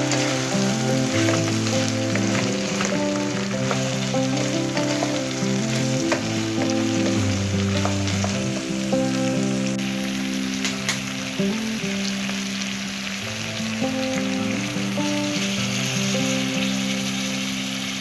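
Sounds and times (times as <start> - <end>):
stirring clicks: 0.0 - 9.1
background music with held notes: 0.0 - 18.0
food sizzling in a pan: 0.0 - 18.0.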